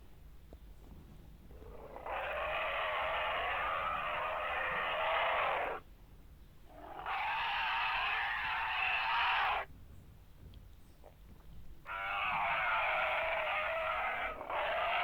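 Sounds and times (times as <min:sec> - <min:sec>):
dinosaur roar: 0:01.6 - 0:05.8, 0:06.7 - 0:09.7, 0:11.9 - 0:15.0.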